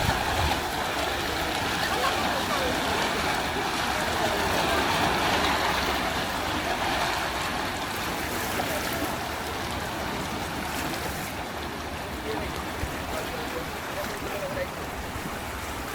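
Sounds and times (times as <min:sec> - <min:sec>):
rushing water: 0:00.0 - 0:15.9.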